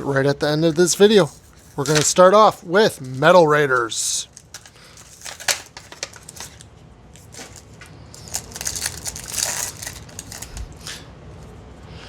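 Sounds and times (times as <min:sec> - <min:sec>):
foil wrapper crinkling: 0:01.6 - 0:11.0.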